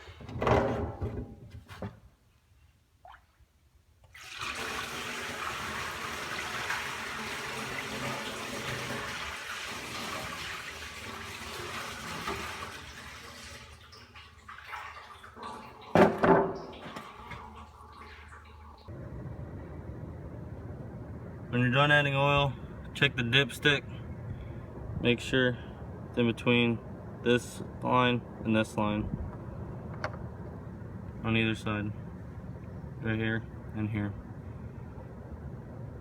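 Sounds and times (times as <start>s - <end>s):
oil pouring into container: 4.1s - 18.8s.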